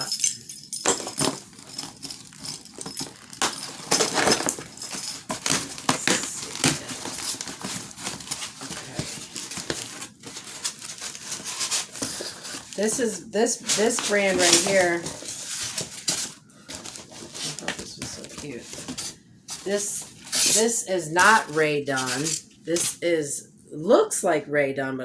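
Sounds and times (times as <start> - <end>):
packaging rustling and crinkling: 0.9 - 20.6.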